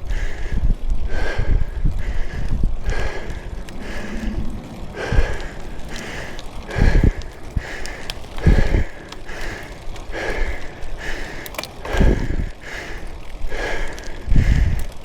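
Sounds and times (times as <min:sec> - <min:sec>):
heavy breathing: 0:00.0 - 0:15.0
breath blowing onto microphone: 0:01.1 - 0:09.7.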